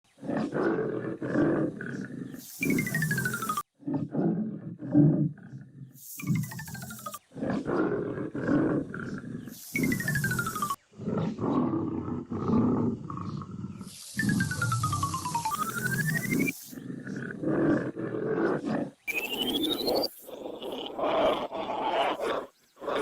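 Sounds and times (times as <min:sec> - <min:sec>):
tiger roaring and growling: 0:00.1 - 0:23.0
hiss: 0:02.4 - 0:03.6, 0:13.8 - 0:16.8
falling whistle-like tone: 0:19.1 - 0:20.1.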